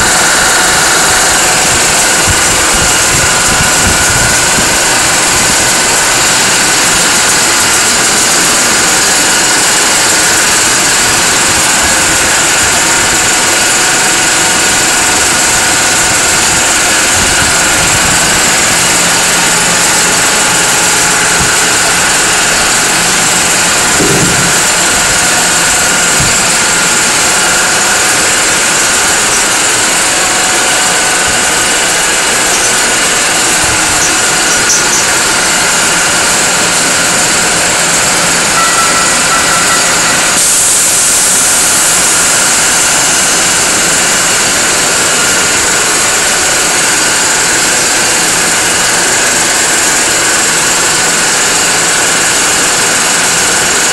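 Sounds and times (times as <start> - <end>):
air compressor running: 0.0 - 53.9.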